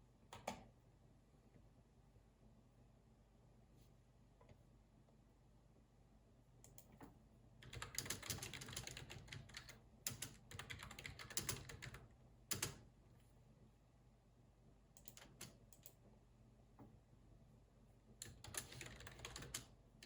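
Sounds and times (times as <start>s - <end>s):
typing on computer keyboard: 7.6s - 12.8s, 15.0s - 16.0s, 18.2s - 19.7s.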